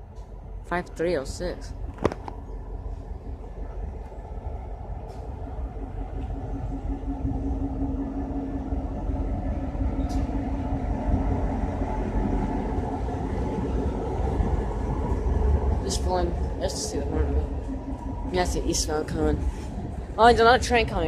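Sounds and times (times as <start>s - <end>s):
freight train rumbling past: 0.0s - 21.0s
train engine hum: 0.0s - 21.0s.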